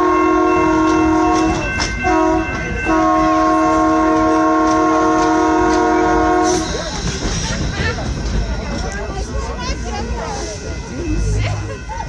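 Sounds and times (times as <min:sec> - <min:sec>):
train horn blasts: 0:00.0 - 0:06.7
rumble of moving train: 0:00.0 - 0:12.0.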